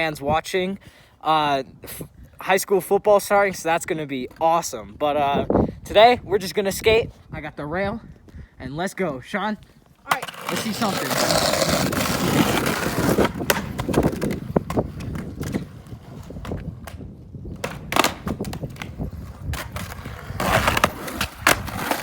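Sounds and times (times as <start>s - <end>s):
skateboard wheels rolling on pavement: 9.8s - 22.0s
skateboard clacks: 10.1s - 22.0s.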